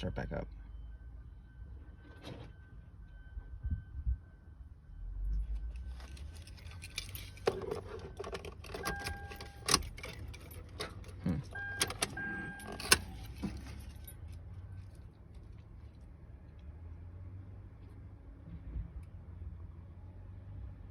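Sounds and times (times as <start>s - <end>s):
car keys jangling: 5.7s - 16.0s
short beeps: 8.8s - 9.6s, 11.5s - 13.2s.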